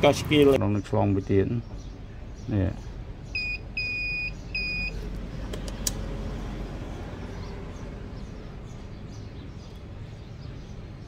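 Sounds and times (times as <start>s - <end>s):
small sharp clicks: 5.4s - 6.0s.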